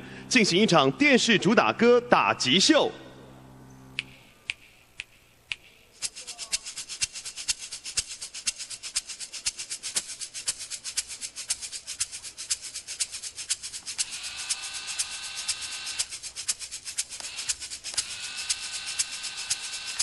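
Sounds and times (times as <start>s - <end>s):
percussion strikes: 4.0s - 19.2s.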